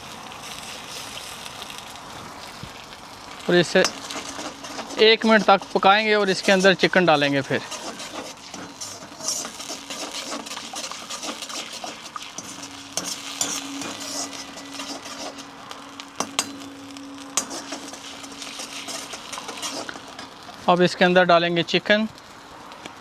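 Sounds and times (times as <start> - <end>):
sauce sizzling in oil: 0.0 - 23.0
faint steady hum: 3.1 - 20.8
spoon clinking and scraping pan: 3.8 - 20.7.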